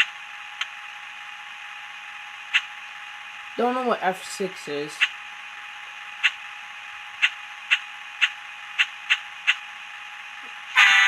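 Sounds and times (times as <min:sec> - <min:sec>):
model locomotive horn blast: 0:10.7 - 0:11.0.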